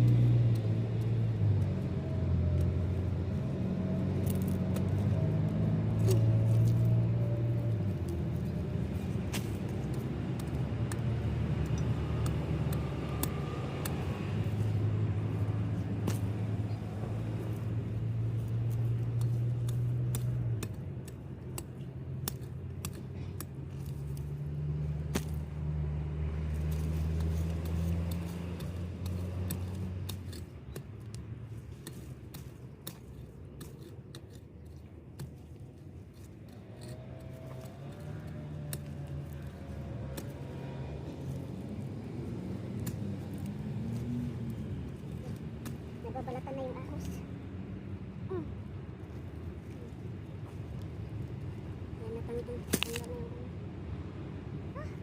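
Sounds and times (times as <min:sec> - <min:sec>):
low engine-like hum: 0:00.0 - 0:55.0.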